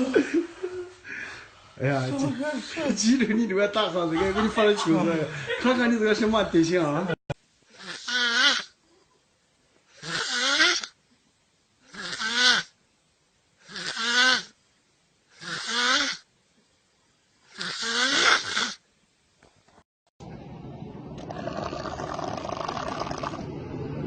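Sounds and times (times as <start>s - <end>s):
person snoring: 7.8s - 8.7s, 10.0s - 10.9s, 11.9s - 12.7s, 13.6s - 14.6s, 15.4s - 16.3s, 17.5s - 18.8s, 21.3s - 23.5s.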